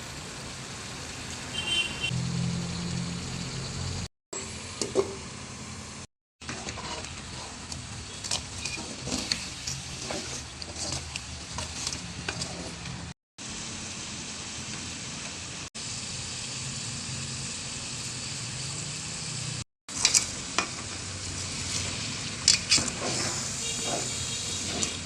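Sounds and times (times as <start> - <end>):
utensil scraping a pan: 6.4 - 13.1, 21.7 - 25.0
food sizzling in a hot pan: 13.4 - 19.6, 20.5 - 24.9.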